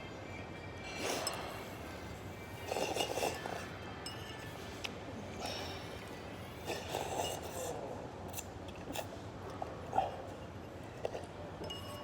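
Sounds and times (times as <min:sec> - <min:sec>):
tableware clicking and clinking: 0:11.1 - 0:12.0.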